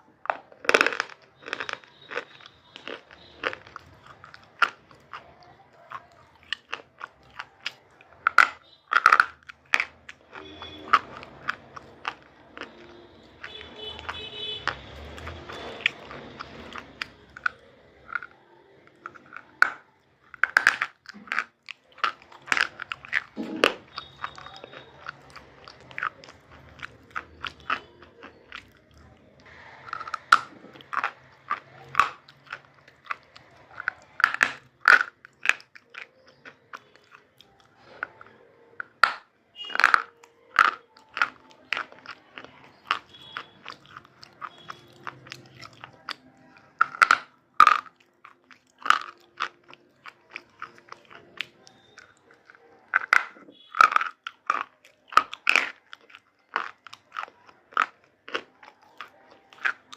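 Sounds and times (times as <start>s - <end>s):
crunchy chewing: 0.0s - 59.9s.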